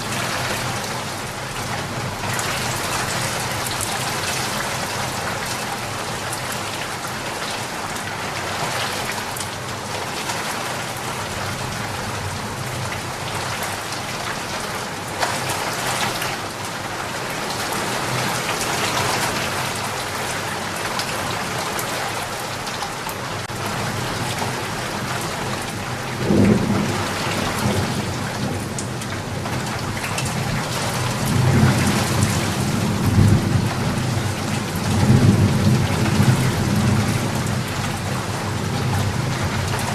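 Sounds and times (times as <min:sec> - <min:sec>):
heavy rain falling: 0:00.0 - 0:39.9
thunder rumbling: 0:26.2 - 0:28.7.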